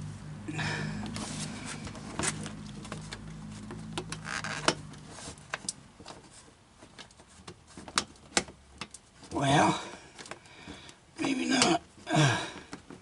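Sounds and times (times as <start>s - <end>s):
low steady hum: 0.0s - 6.3s
scraping rustle: 1.1s - 8.2s.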